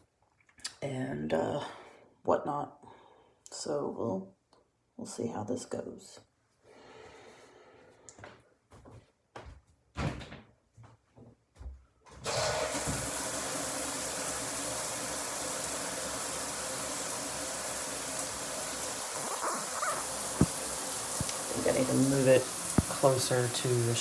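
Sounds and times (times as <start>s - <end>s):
shower spray running: 12.6s - 24.0s
handling knocks: 19.4s - 20.6s.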